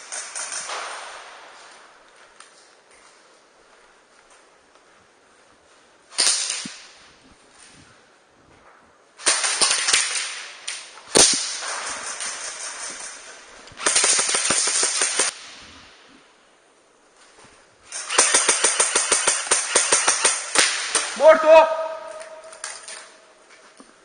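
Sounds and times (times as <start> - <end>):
airsoft guns firing bursts: 0.0 - 1.4, 9.2 - 15.5, 17.9 - 21.5.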